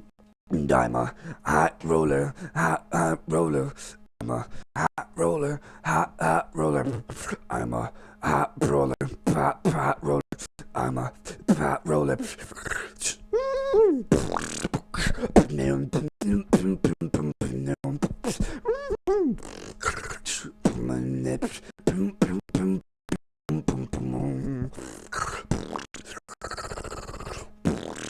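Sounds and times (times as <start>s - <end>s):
person beatboxing: 6.8s - 7.4s, 8.3s - 10.8s, 11.4s - 22.8s, 23.5s - 28.0s.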